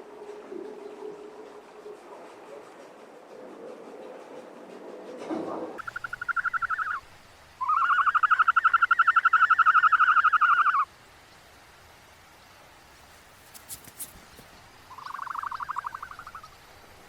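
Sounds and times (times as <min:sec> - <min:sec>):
frog pulsed trills: 0:05.8 - 0:07.0, 0:07.6 - 0:10.9, 0:14.9 - 0:16.6.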